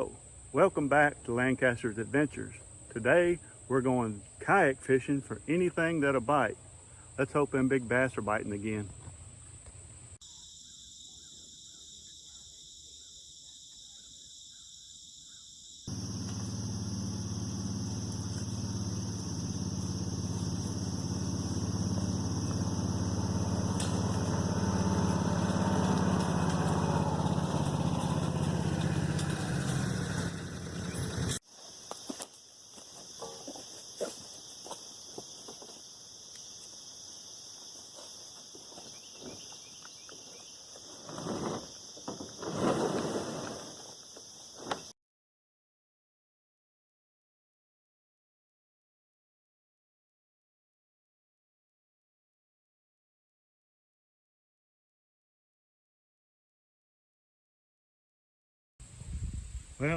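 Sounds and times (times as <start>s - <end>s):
insects chirring: 0.0s - 45.0s
engine running steadily: 15.9s - 31.4s.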